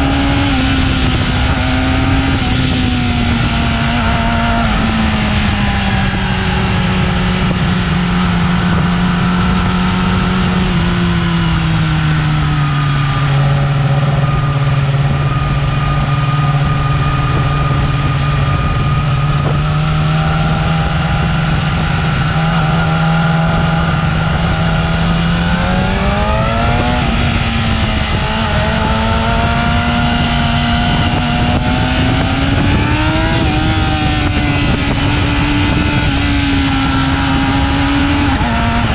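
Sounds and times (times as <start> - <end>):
motorcycle engine revving: 0.0 - 38.9.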